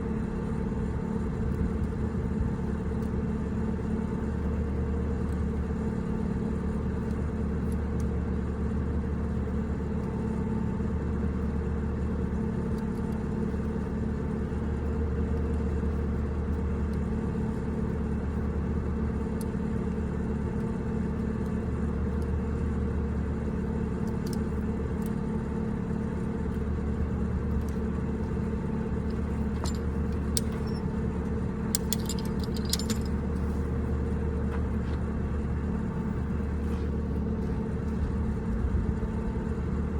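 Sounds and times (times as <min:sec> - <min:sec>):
engine idling: 0:22.0 - 0:39.9
light metallic clinks: 0:29.0 - 0:31.0, 0:31.7 - 0:33.7.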